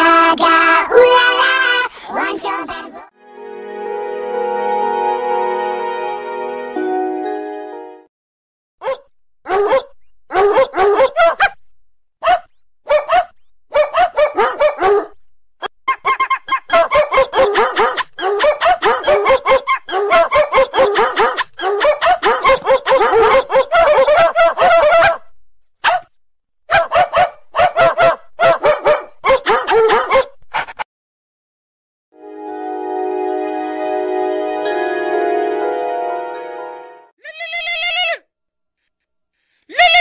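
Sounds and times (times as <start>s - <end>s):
dog bark ringtone tune: 16.5s - 23.9s.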